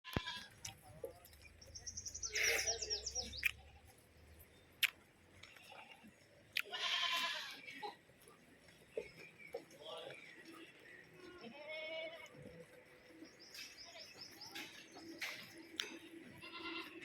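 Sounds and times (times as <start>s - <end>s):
bird chirping: 0.7s - 5.0s, 12.5s - 16.2s.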